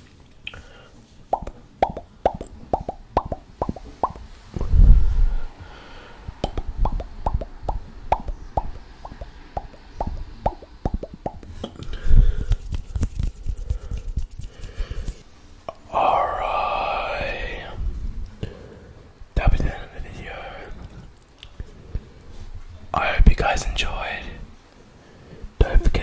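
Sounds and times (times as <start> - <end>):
wet mouth pops and clicks: 0.4 - 0.6, 1.3 - 4.3, 6.4 - 11.8.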